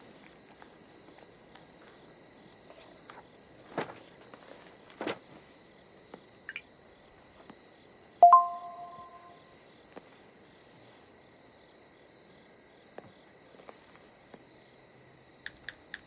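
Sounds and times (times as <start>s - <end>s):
crickets chirring: 0.0s - 16.0s
loud two-tone chime: 8.2s - 9.3s.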